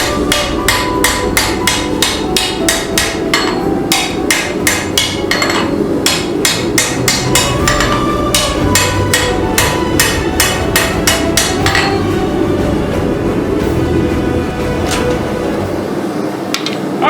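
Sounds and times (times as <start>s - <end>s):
hammer striking steel on anvil: 0.0s - 13.0s.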